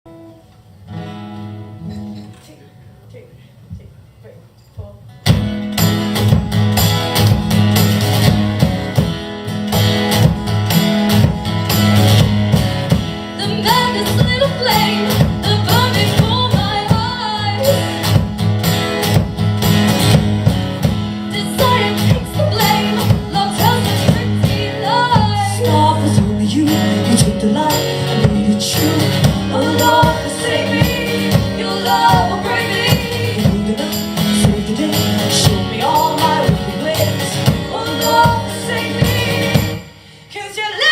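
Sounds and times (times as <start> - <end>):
strummed acoustic guitar: 0.1 - 2.6, 5.1 - 40.0
woman singing: 13.4 - 18.2, 21.3 - 40.9.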